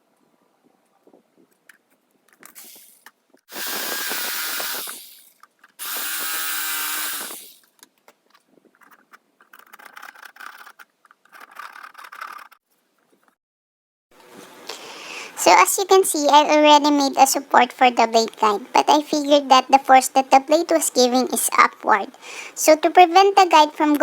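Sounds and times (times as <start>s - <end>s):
power tool motor whine: 3.5s - 7.6s.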